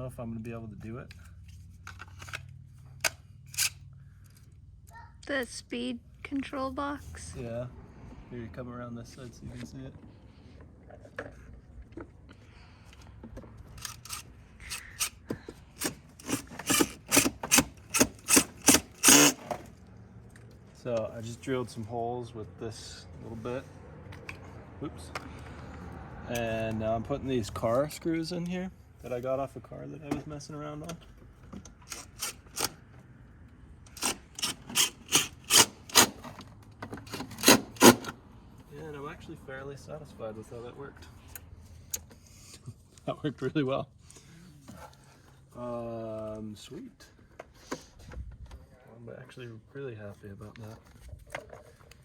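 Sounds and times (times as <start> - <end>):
hand tool rasping plastic: 13.7 - 19.7, 31.8 - 32.8, 33.9 - 36.4, 37.0 - 38.1.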